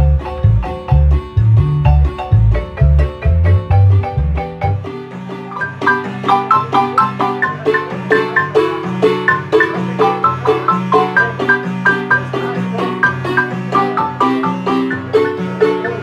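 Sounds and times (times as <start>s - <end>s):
low bass line: 0.0s - 4.9s
marimba music: 0.0s - 16.0s.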